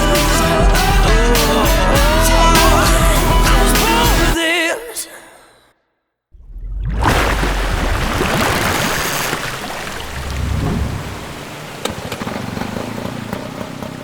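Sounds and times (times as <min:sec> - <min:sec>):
wind and water rushing: 0:06.4 - 0:13.8
outboard engine humming: 0:06.4 - 0:14.0.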